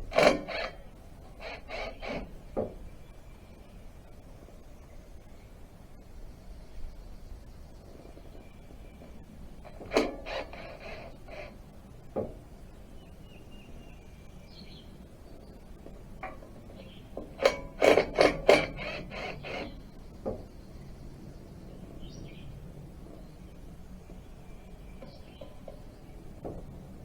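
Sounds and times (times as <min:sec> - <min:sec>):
tools and engine parts clattering: 0:16.2 - 0:19.7.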